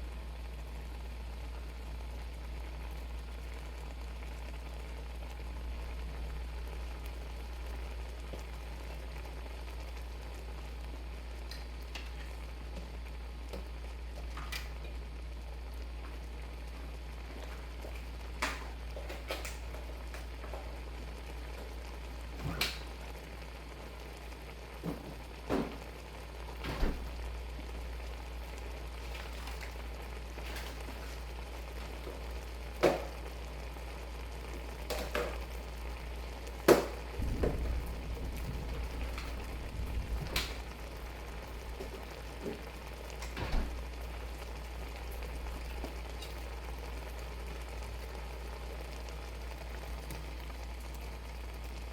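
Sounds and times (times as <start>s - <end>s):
shrimp simmering in a pan: 0.0s - 51.9s
steady low hum: 37.0s - 46.0s.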